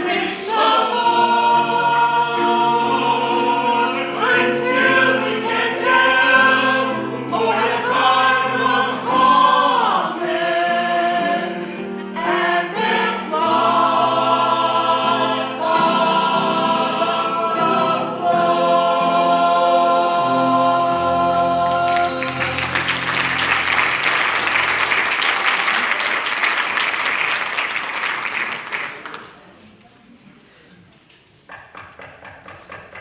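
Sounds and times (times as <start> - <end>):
group singing: 0.0 - 23.6.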